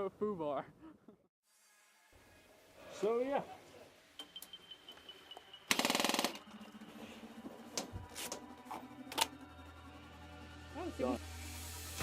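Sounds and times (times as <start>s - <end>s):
airsoft gun rapid burst: 5.7s - 6.4s.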